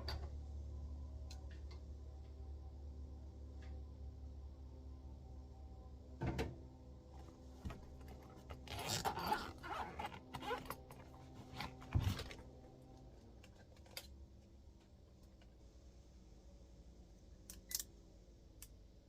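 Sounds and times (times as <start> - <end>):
rustling and scraping of tools: 7.2 - 12.5.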